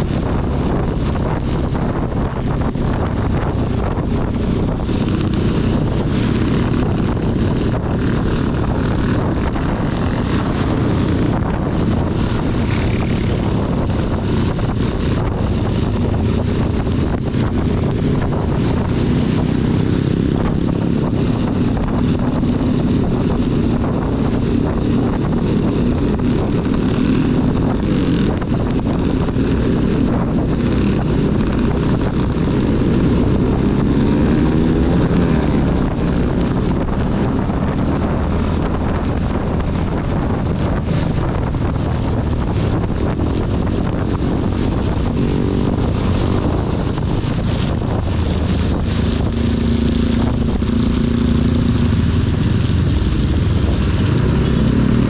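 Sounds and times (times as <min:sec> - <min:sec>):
motorcycle engine running: 0:00.0 - 0:55.0
wind buffeting microphone: 0:00.0 - 0:55.0
hiss of rain and spray: 0:45.8 - 0:55.0.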